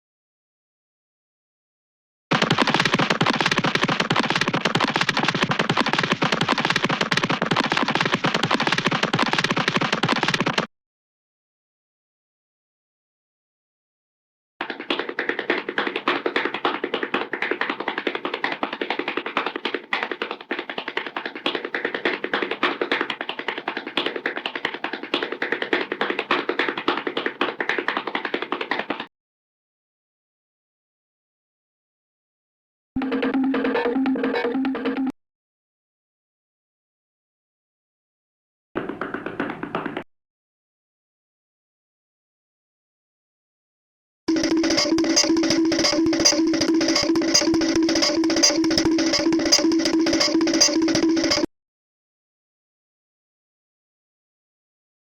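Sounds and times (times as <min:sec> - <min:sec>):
fast cartoon footstep taps: 0:02.3 - 0:10.7, 0:14.6 - 0:29.1, 0:38.8 - 0:40.1, 0:44.3 - 0:51.5.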